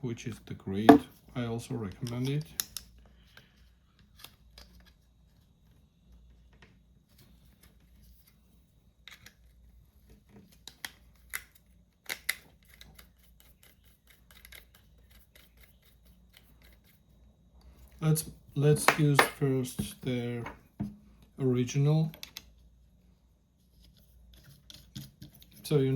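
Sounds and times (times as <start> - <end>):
small plastic parts clicking: 10.5 - 16.8.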